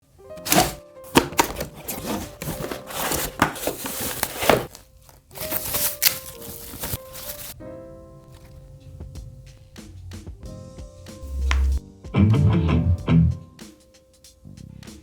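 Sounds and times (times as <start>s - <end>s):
wrapping crinkling and rustling: 0.3s - 7.6s
clicks and knocks against box: 0.4s - 4.8s.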